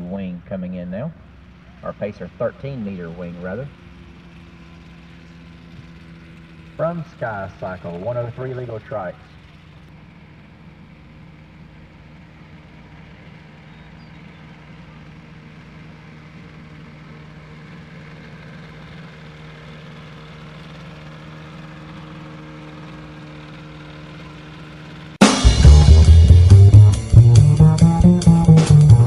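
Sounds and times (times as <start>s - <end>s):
ultralight aircraft engine running: 0.0s - 29.0s.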